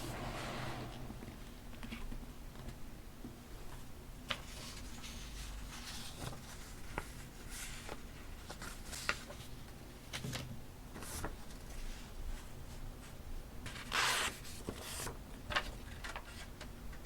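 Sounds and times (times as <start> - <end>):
paper rustling and sliding: 0.0 - 2.1.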